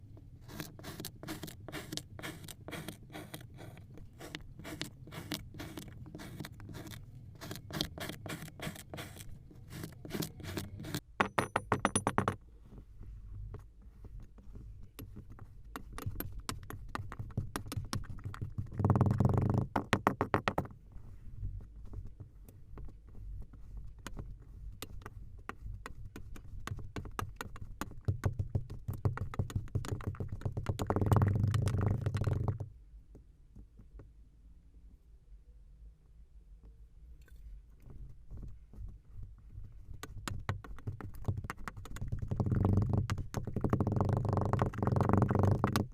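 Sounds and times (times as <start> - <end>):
knife cutting through sand: 0.5 - 11.0.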